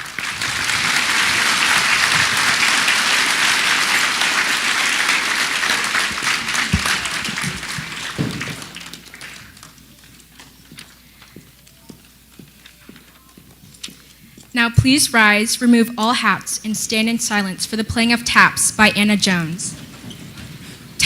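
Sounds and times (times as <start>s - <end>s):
large audience applauding: 0.0s - 11.9s.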